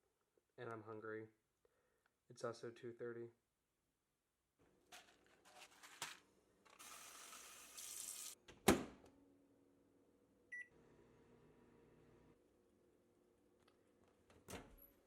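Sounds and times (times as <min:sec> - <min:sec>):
microwave oven beep: 0:10.5 - 0:10.8.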